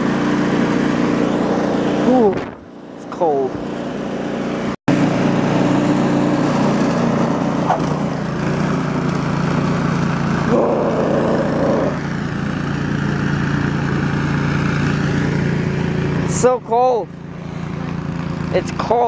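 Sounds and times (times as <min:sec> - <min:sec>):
small petrol engine running: 0:00.0 - 0:19.0.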